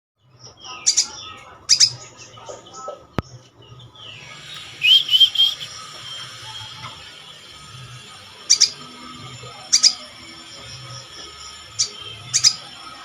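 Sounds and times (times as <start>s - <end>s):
bird calling: 4.0s - 6.9s.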